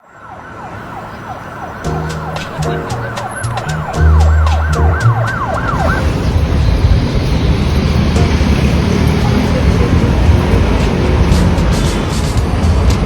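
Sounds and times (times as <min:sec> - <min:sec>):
siren yelping: 0:00.4 - 0:06.2
music with deep bass and beat: 0:01.9 - 0:06.0, 0:08.2 - 0:13.0.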